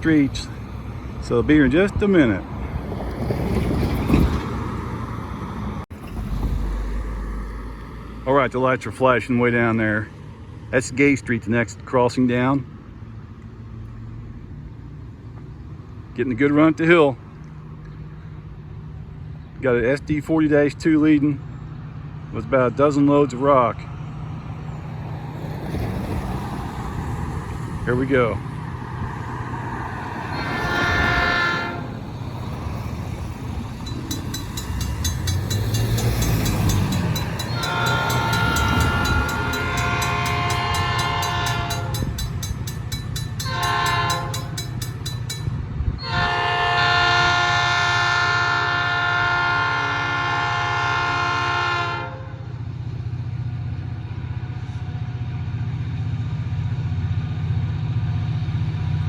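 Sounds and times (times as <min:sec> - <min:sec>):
diesel locomotive engine drone: 0:00.0 - 0:59.0
locomotive air horn blasts: 0:30.3 - 0:32.1, 0:36.3 - 0:45.0, 0:46.0 - 0:52.5.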